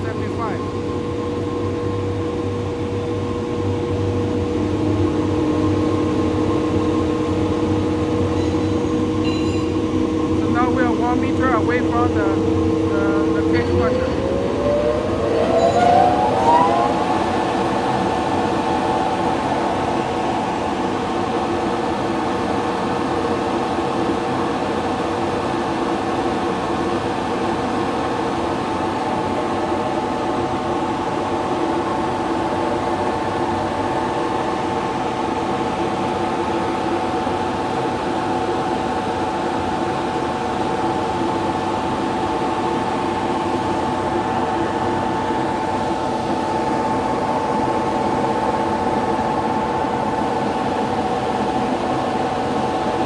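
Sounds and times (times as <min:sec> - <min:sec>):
mill rotors whirring: 0:00.0 - 0:22.0.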